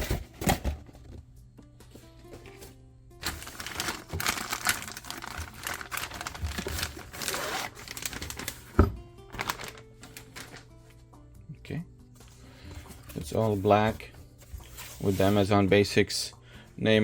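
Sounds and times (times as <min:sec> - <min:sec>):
bag rustling: 0:03.2 - 0:10.7.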